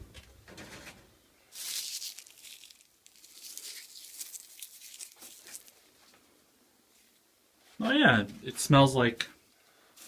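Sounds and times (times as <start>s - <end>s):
dried hops crushed between fingers: 1.5s - 5.9s.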